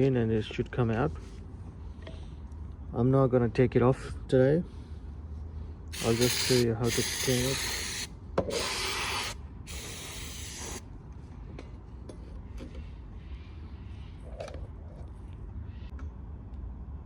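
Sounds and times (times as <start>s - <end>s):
hissing spray bursts: 6.0s - 10.8s.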